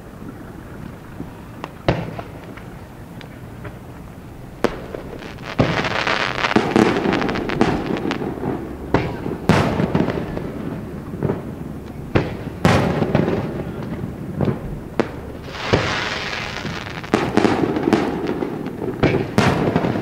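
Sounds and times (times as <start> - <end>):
fireworks crackling: 0.0 - 20.0
firework shells bursting: 4.6 - 10.4, 14.4 - 20.0.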